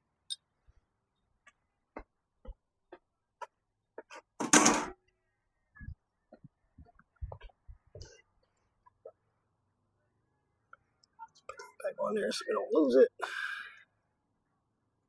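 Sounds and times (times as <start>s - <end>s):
metal clatter: 4.4s - 4.9s.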